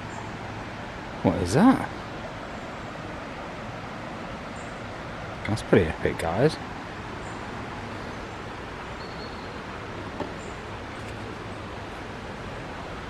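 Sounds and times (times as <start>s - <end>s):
outdoor background hiss: 0.0s - 13.0s.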